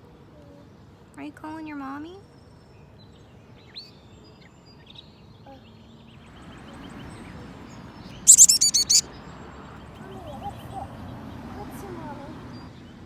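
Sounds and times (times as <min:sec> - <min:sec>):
baby bird cheeping: 0:08.3 - 0:09.0.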